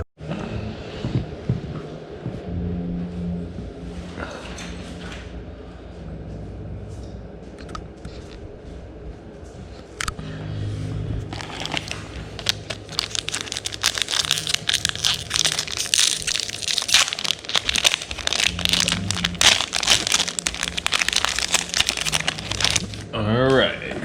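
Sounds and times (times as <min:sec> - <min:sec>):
foil wrapper crinkling: 0:11.3 - 0:23.0.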